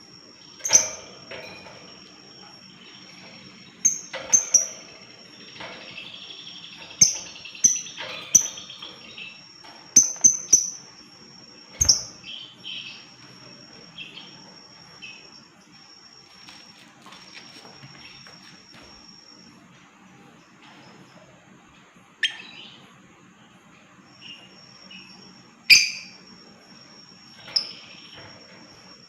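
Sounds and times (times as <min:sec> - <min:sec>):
bird shrill chirps: 0:22.2 - 0:22.8, 0:25.7 - 0:26.3.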